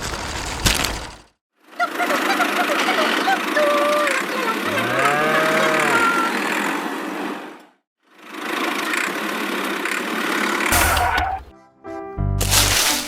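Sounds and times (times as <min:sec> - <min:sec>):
cow mooing: 0:04.6 - 0:06.6.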